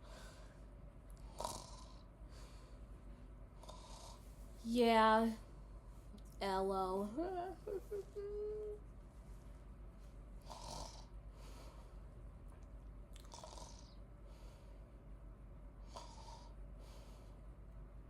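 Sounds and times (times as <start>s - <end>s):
person snoring softly: 1.2s - 2.1s, 3.6s - 4.2s, 10.4s - 11.1s, 13.2s - 14.0s, 15.8s - 16.6s.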